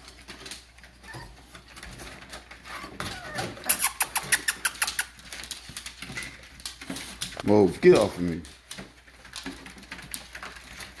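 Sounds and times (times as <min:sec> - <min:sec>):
puppies squeaking and whimpering: 0:00.3 - 0:06.3.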